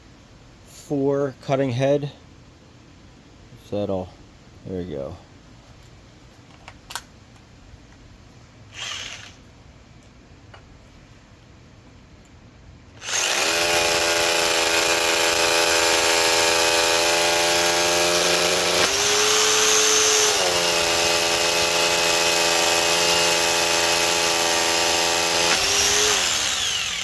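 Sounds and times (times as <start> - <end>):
rotary hammer drilling: 8.7 - 9.4, 13.0 - 27.0.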